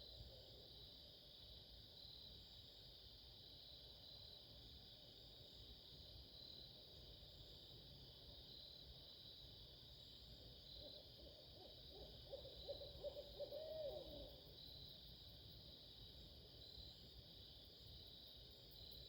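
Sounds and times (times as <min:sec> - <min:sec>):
owl hooting: 0:10.9 - 0:14.4.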